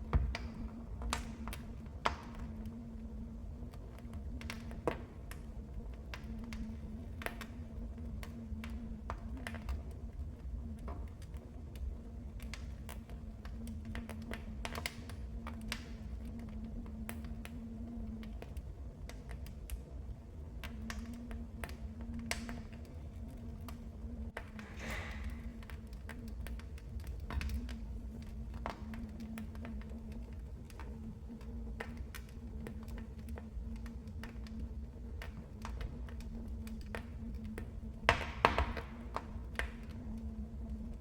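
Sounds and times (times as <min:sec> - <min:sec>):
fire crackling and popping: 0:00.0 - 0:41.0.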